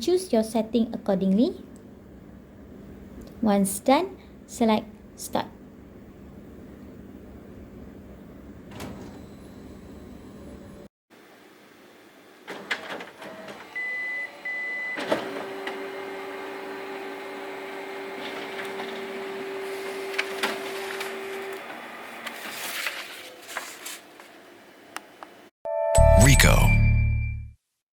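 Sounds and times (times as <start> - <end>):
printer motors humming and clattering: 12.4 - 24.3.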